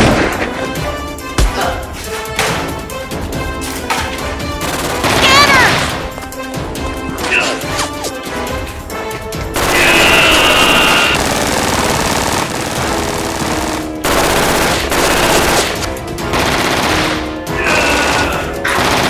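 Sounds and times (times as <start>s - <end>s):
background music: 0.0s - 19.0s
rapid automatic gunfire: 4.6s - 6.0s, 9.6s - 19.0s.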